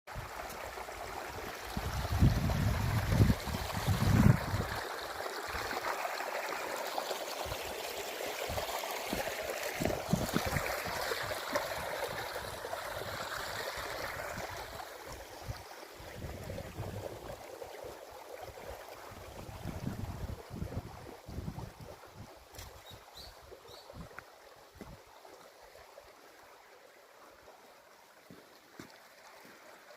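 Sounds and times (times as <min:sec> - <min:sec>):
stream splashing between rocks: 0:00.2 - 0:24.1.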